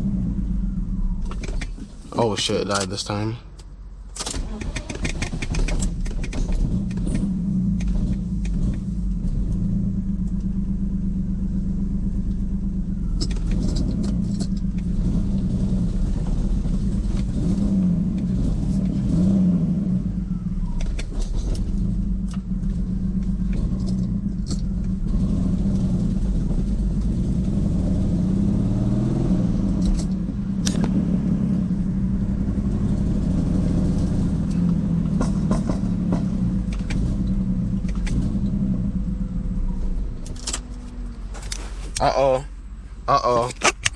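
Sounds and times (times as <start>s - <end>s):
car engine rumbling: 0.0s - 43.9s.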